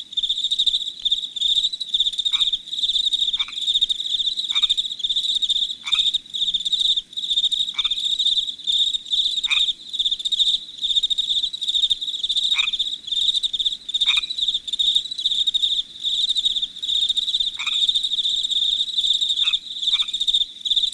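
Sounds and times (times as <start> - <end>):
crickets chirping: 0.0 - 20.9
frog calling: 2.3 - 2.6, 3.3 - 4.8, 5.8 - 6.2, 7.7 - 8.1, 9.4 - 9.8, 12.3 - 12.8, 13.9 - 20.3.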